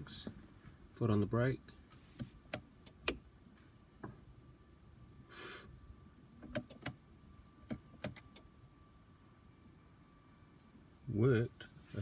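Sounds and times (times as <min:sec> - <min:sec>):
short hiss: 0:05.3 - 0:05.7.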